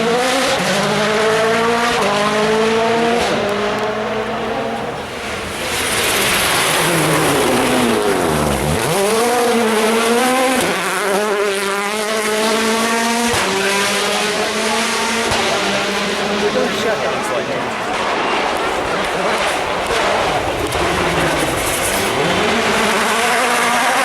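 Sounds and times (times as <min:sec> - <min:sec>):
rally car engine at high revs: 0:00.0 - 0:24.0
tyres rushing on gravel: 0:03.0 - 0:11.6, 0:13.4 - 0:24.0.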